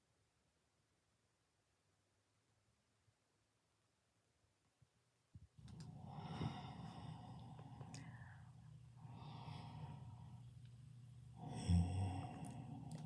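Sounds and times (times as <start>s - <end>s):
person snoring: 11.4s - 13.0s.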